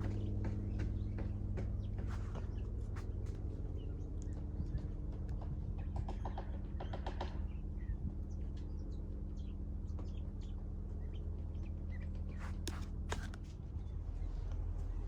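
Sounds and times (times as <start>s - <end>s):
songbirds chirping: 0.0s - 15.0s.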